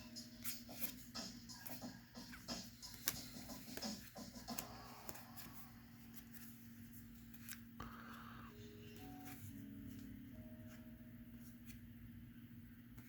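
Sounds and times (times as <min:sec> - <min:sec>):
trading cards rustling: 0:00.3 - 0:10.8.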